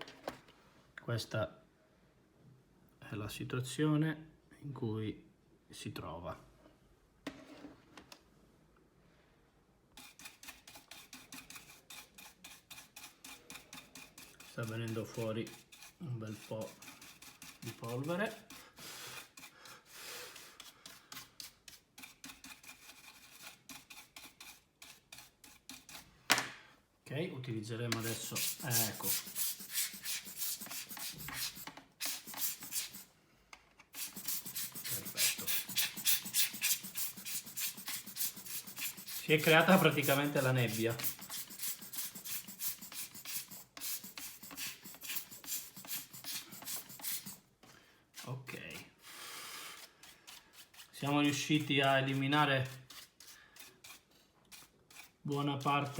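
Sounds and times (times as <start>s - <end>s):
brush bristles scratchy clicks: 27.9s - 33.1s, 34.0s - 47.4s.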